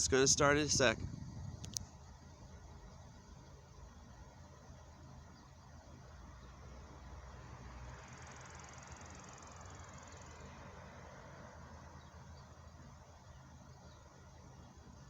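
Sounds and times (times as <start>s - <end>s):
low steady rumble: 0.0s - 6.2s
insects buzzing: 7.9s - 10.6s.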